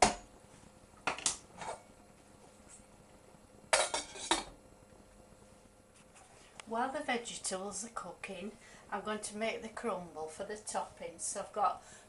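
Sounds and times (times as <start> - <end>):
pots and pans clattering: 3.7 - 4.5.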